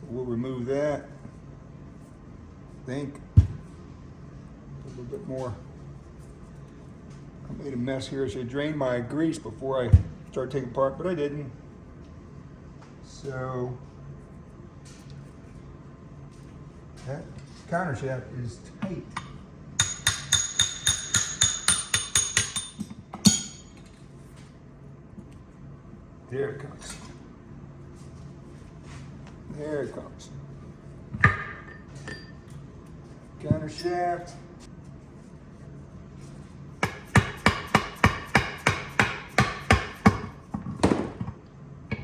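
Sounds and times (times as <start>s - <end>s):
hammer striking metal punch: 19.2s - 23.8s, 31.2s - 32.3s, 36.8s - 40.4s.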